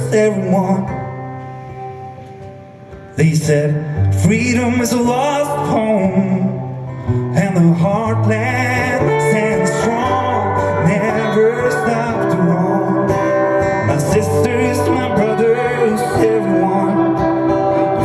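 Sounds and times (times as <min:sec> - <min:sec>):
acoustic guitar: 0:00.0 - 0:18.0
steady bass: 0:06.1 - 0:18.0
live band playing: 0:08.6 - 0:18.0
wavering melody line: 0:09.2 - 0:18.0.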